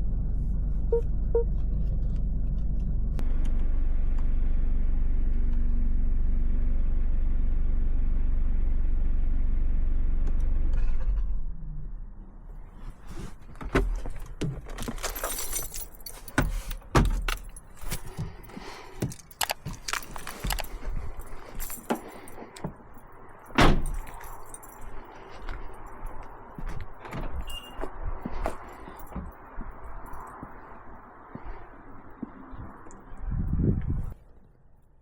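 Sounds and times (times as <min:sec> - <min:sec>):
car engine running: 0:00.0 - 0:27.4
clicks and metallic rattles: 0:13.5 - 0:22.8.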